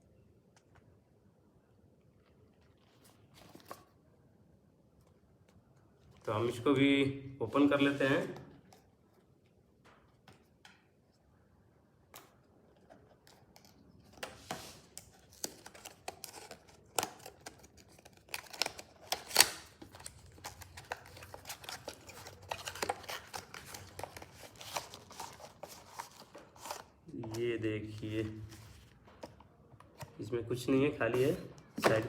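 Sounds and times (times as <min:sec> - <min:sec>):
packaging crinkling: 0:14.8 - 0:27.1.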